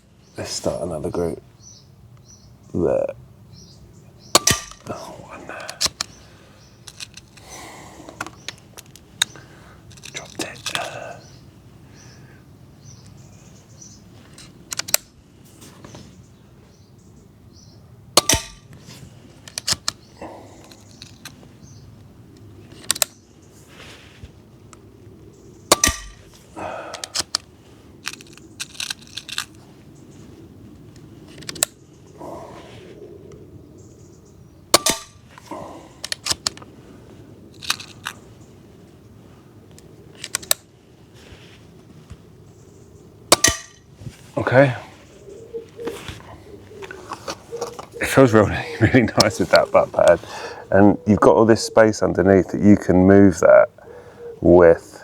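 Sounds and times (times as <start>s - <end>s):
air pistol shots cracking: 4.3s - 5.0s, 18.2s - 18.7s, 25.7s - 26.3s, 34.7s - 35.3s, 43.3s - 43.8s.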